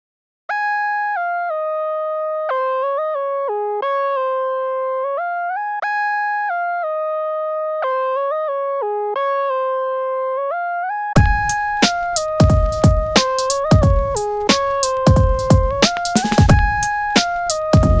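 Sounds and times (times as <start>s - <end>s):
synthesizer keyboard melody: 11.2s - 18.0s.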